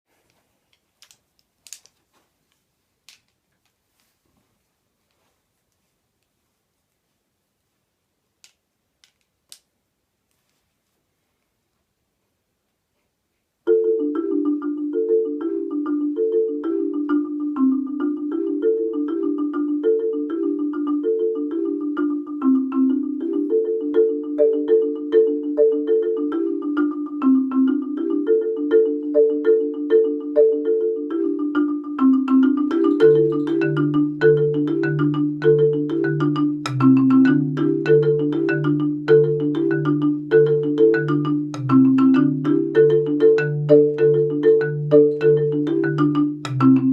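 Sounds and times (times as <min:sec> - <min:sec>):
marimba low bass line: 0:13.7 - 0:46.9
marimba playing fast notes: 0:13.7 - 0:46.9.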